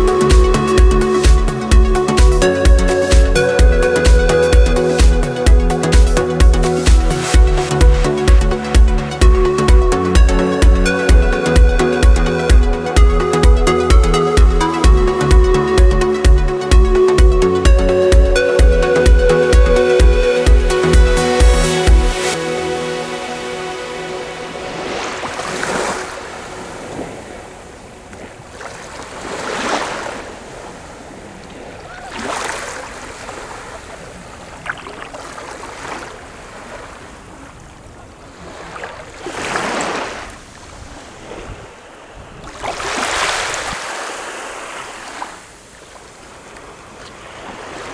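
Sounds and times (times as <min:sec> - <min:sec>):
sea waves breaking on shore: 0:00.0 - 0:13.0, 0:21.3 - 0:47.9.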